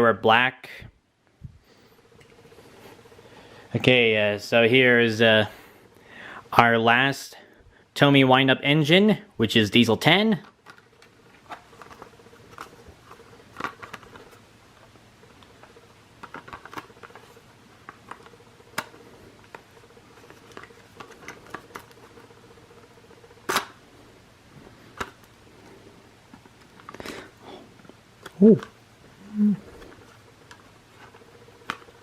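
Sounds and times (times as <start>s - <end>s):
plastic and cardboard crinkles: 10.3s - 14.4s, 15.4s - 22.3s.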